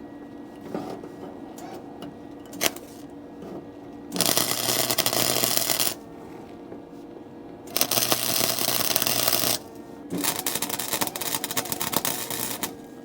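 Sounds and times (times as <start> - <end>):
arc welding crackling: 2.4 - 6.4, 7.6 - 13.0.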